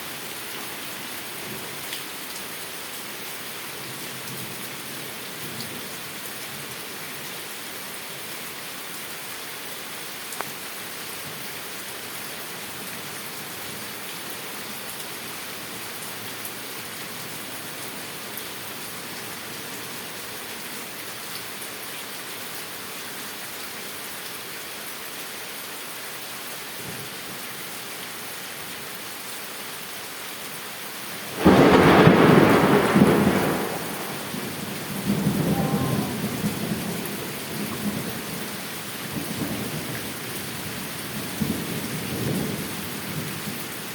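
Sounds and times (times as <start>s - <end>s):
heavy rain falling: 0.0s - 43.9s
thunder crack rumbling: 31.3s - 37.1s.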